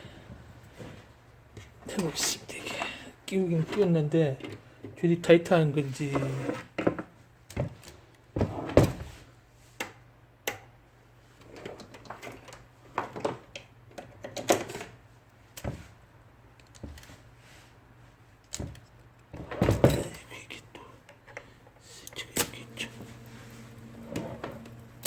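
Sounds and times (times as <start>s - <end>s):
low steady hum: 19.4s - 25.0s.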